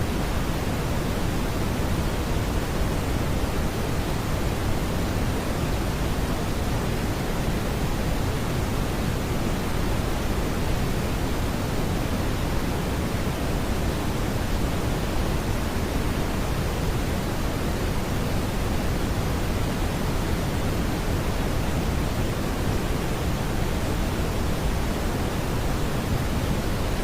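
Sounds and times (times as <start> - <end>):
brown noise rumble: 0.0 - 27.0.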